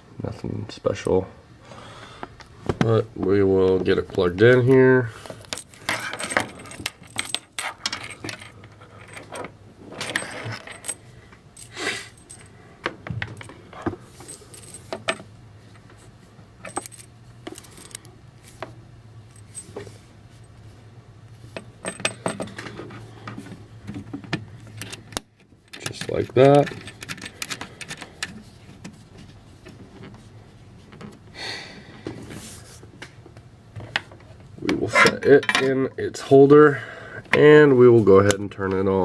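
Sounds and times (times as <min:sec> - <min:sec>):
clicks and clinks of handling: 0:16.6 - 0:18.7, 0:21.5 - 0:29.0.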